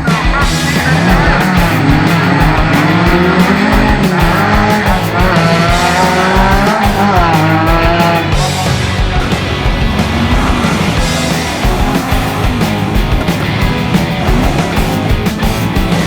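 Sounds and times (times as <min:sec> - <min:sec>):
loud rock music: 0:00.0 - 0:16.0
off-road engines revving: 0:00.0 - 0:16.0.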